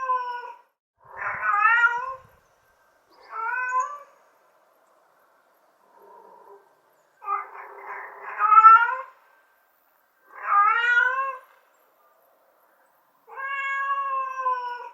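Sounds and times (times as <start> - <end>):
cat meowing: 1.2 - 2.3, 3.2 - 4.1, 7.2 - 9.2, 10.3 - 11.6, 13.3 - 14.9.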